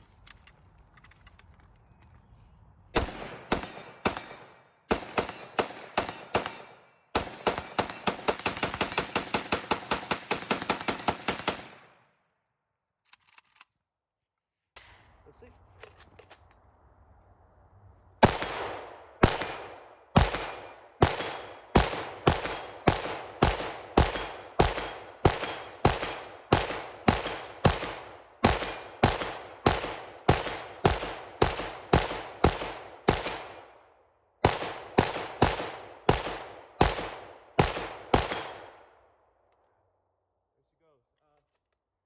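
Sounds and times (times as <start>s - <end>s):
rifle shots fired rapidly: 3.0s - 12.0s, 18.2s - 33.8s, 34.4s - 39.0s.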